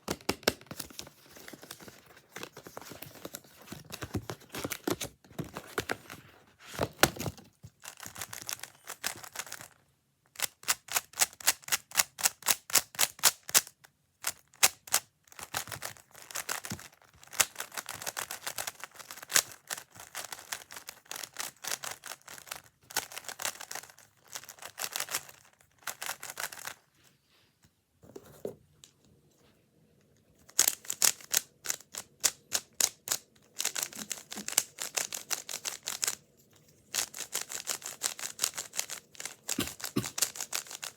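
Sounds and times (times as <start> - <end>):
puzzle cube clicking: 30.5 - 36.2, 36.9 - 40.9.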